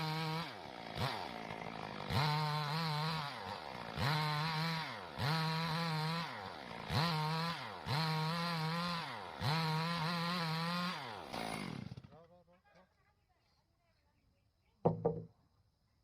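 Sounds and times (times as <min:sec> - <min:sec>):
chainsaw sawing a log: 0:00.0 - 0:12.2.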